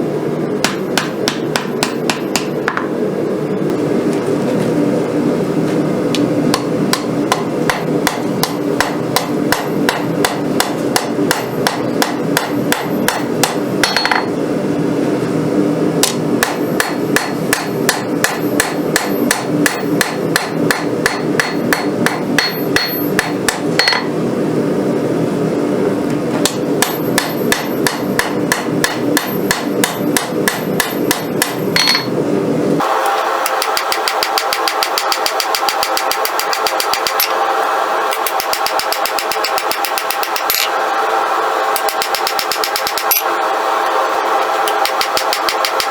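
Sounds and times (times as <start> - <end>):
steady hum: 0.0 - 45.9
hammer striking steel on anvil: 0.6 - 2.9, 6.5 - 14.3, 16.0 - 24.1, 26.4 - 32.2, 33.4 - 37.4, 38.1 - 40.8, 41.8 - 43.3, 44.4 - 45.9.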